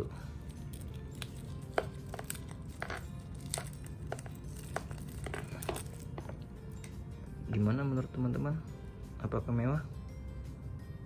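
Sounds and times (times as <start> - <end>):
plastic wrapping crinkling: 0.7 - 6.4.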